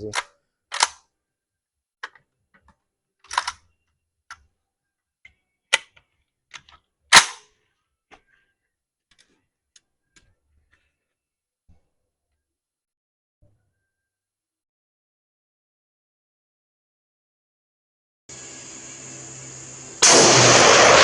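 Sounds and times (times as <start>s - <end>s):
cartridges clicking into magazine: 0.1s - 1.1s, 3.3s - 3.6s.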